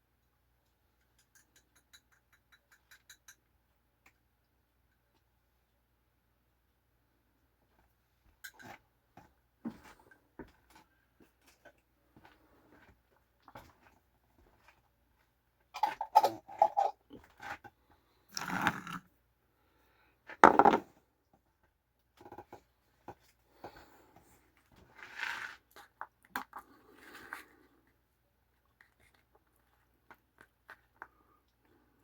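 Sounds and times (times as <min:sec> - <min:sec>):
handling and eating: 0:20.6 - 0:32.0.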